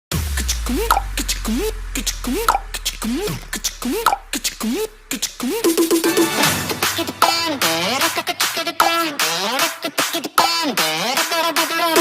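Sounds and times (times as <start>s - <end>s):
looping electronic beat: 0.1s - 12.0s
swooping rising and falling tone: 0.2s - 8.8s
steady low hum: 0.4s - 6.0s.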